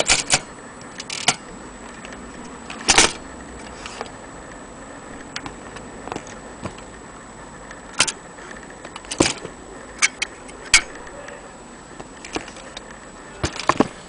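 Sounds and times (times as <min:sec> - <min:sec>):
typewriter clacking: 0:00.0 - 0:01.4.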